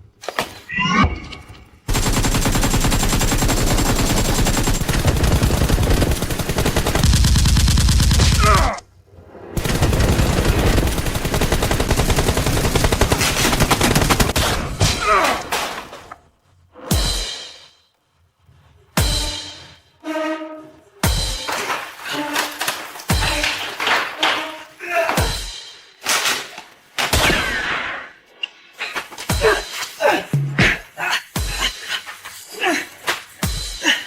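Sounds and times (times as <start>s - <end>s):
rapid automatic gunfire: 1.9s - 8.6s, 9.6s - 14.5s
person crying out: 8.4s - 8.8s, 24.3s - 25.4s, 29.4s - 31.4s.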